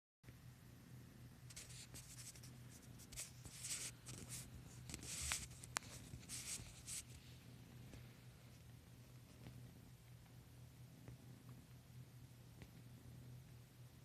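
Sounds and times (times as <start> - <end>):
fabric rustling and scratching: 1.5 - 7.4.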